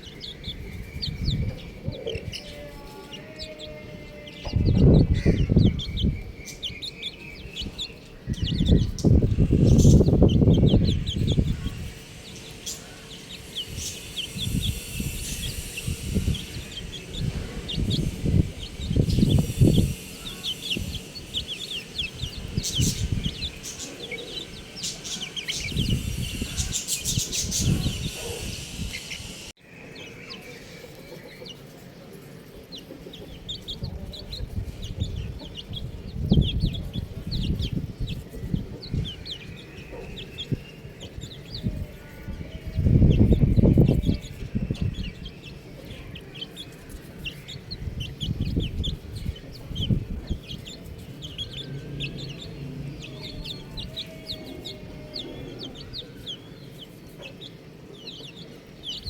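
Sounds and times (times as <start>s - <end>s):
baby chicks peeping: 0.0s - 59.0s.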